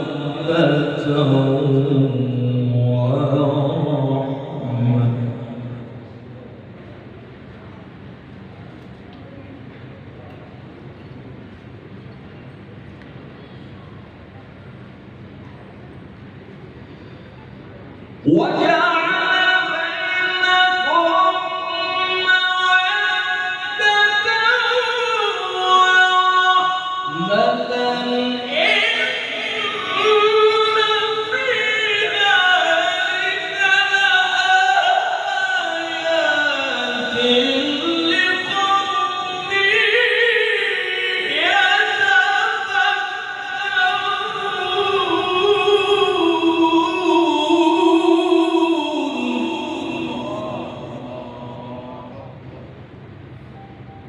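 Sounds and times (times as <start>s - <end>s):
man chanting melodically: 0.0s - 6.5s, 18.2s - 52.9s.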